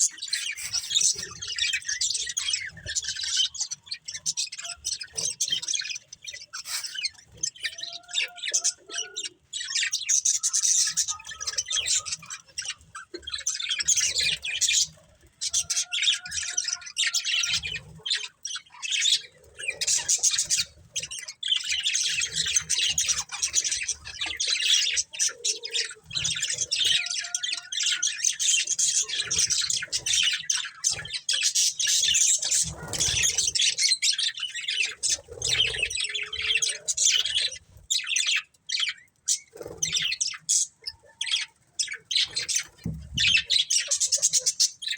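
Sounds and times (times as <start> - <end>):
budgerigars chirping: 0.0 - 44.9.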